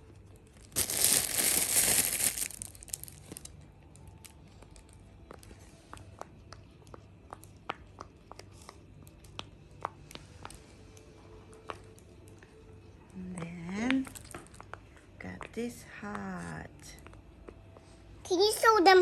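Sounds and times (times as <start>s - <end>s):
plastic crinkling: 0.5s - 5.0s.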